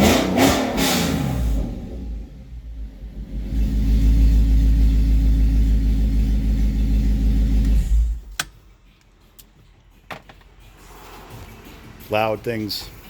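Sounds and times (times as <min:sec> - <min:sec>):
car engine running loud: 0:00.0 - 0:08.3
sharp click: 0:07.6 - 0:08.6.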